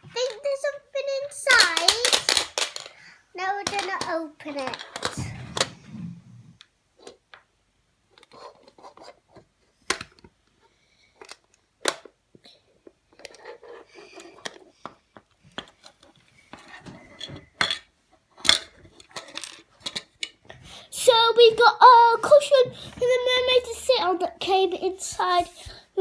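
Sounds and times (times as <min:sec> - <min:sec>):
plastic clicks and taps: 0:09.9 - 0:10.4.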